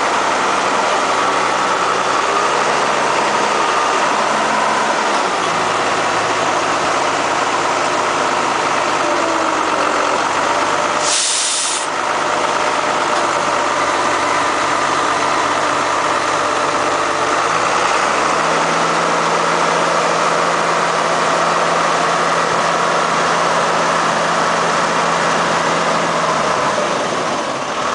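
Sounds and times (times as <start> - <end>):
diesel engine running: 0.0 - 27.9
air hiss: 11.0 - 11.9.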